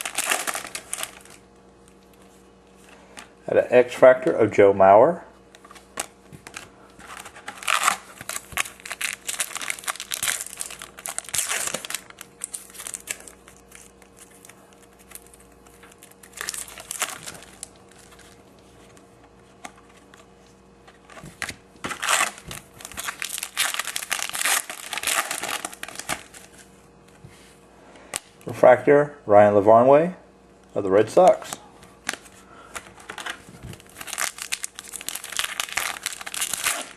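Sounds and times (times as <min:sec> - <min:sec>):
wrapper crinkling and tearing: 0:00.0 - 0:01.4, 0:05.9 - 0:18.4, 0:21.1 - 0:26.6, 0:32.9 - 0:36.9.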